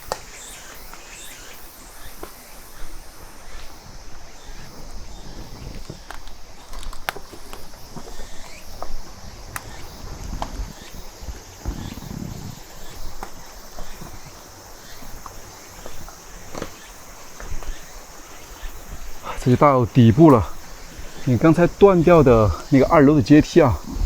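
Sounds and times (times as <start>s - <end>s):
insects chirring: 0.0s - 24.0s
footsteps: 19.0s - 24.0s.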